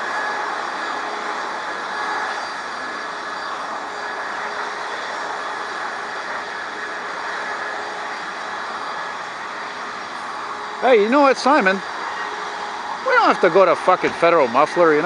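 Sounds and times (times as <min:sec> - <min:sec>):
faint steady tones: 0:00.0 - 0:15.0
jet engines running: 0:00.0 - 0:15.0.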